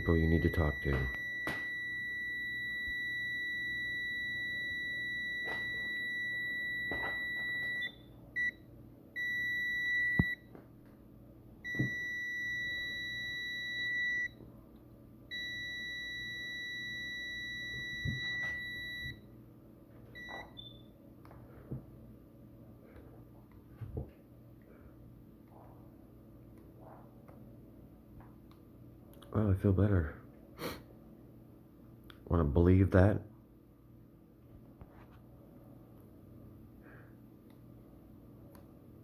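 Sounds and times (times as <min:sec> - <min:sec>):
voltage tester beeping: 0:00.0 - 0:08.6, 0:09.2 - 0:10.4, 0:11.7 - 0:14.4, 0:15.3 - 0:19.3.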